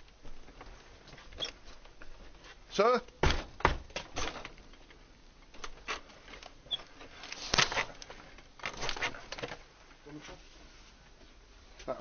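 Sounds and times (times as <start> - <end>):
rustles: 0.0 - 2.8, 3.9 - 12.0
knocks: 3.2 - 4.3.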